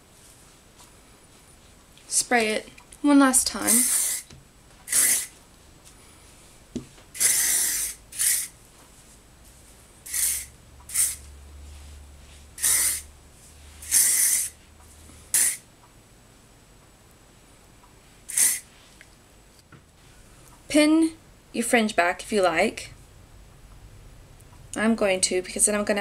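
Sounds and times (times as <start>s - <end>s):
hairspray hissing bursts: 3.6s - 4.3s, 4.9s - 5.3s, 7.1s - 8.6s, 10.1s - 11.3s, 12.6s - 13.1s, 13.8s - 14.6s, 15.3s - 15.6s, 18.3s - 18.7s.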